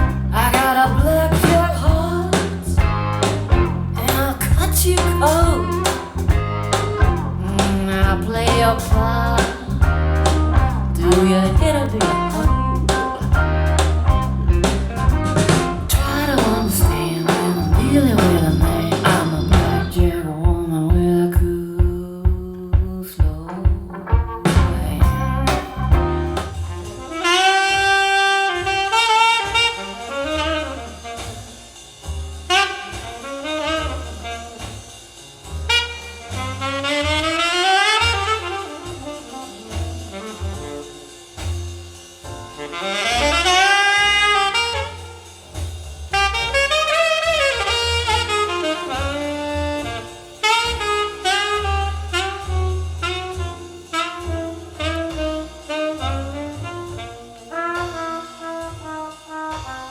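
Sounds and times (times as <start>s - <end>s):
saxophone solo: 0.0s - 20.3s, 24.0s - 31.8s, 32.5s - 35.1s, 35.7s - 41.5s, 42.6s - 59.9s
drum hits: 0.0s - 27.4s
bass line: 0.0s - 59.9s.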